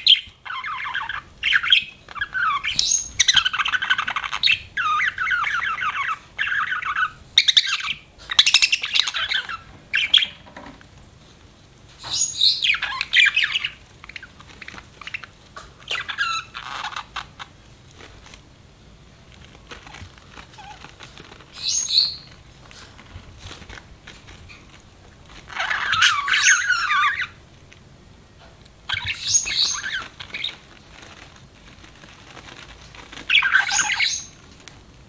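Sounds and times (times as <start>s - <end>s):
budgerigar chirping and chattering: 0.0s - 10.4s, 12.0s - 17.6s, 21.5s - 22.3s, 25.5s - 27.4s, 28.9s - 30.7s, 33.3s - 34.4s.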